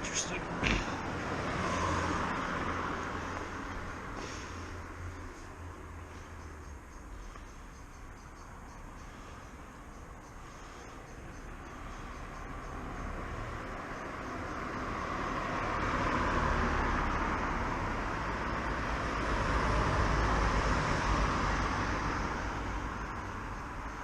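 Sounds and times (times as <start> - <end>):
motor vehicles passing: 0.0 - 24.0.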